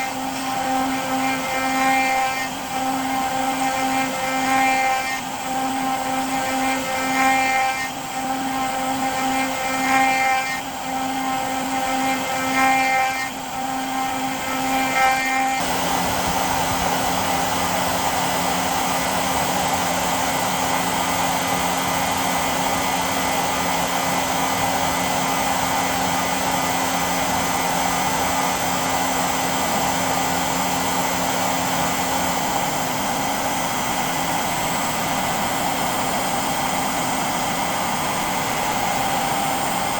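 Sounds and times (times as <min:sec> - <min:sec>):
router spindle milling metal: 0:00.0 - 0:39.9.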